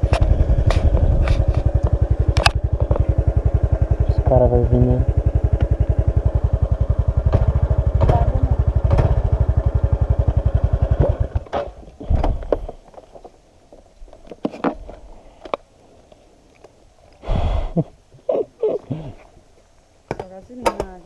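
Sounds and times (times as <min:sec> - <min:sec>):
motorcycle engine idling: 0:00.0 - 0:12.9.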